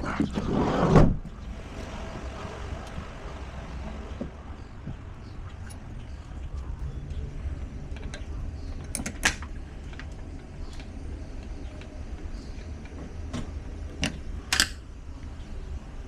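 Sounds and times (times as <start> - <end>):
low rumble: 0.0 - 16.0
hand tools clicking and knocking: 14.0 - 14.8.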